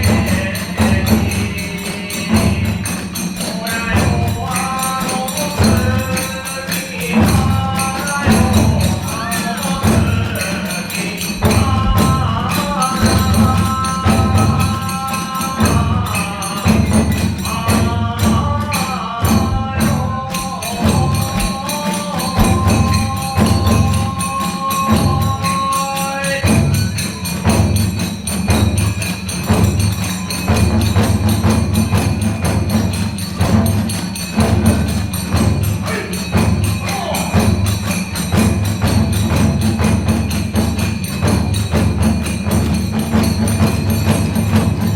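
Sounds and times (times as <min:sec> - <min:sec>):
drums beating: 0:00.0 - 0:44.9
hand cymbals clashing: 0:00.0 - 0:44.9.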